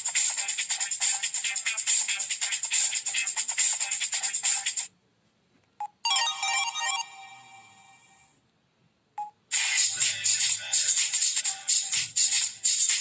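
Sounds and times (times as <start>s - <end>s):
phone ringtone melody: 5.8s - 8.3s.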